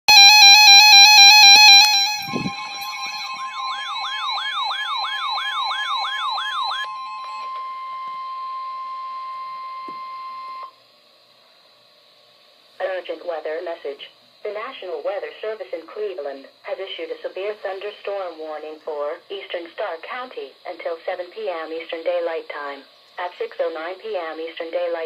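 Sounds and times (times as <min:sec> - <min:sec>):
siren-like wail: 0:00.1 - 0:10.7
steady warning alarm tone: 0:00.1 - 0:10.8
electronic warbling burst: 0:01.0 - 0:06.9.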